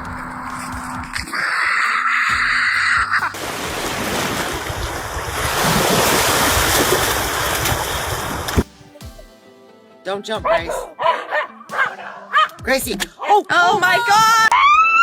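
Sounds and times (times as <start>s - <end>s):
ocean surf breaking: 3.3s - 8.6s
wind on microphone: 3.6s - 8.6s.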